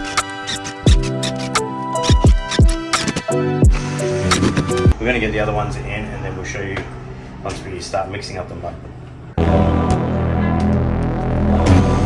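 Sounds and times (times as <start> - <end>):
background music with deep drums: 0.9 - 1.2, 2.1 - 2.9, 3.6 - 5.0.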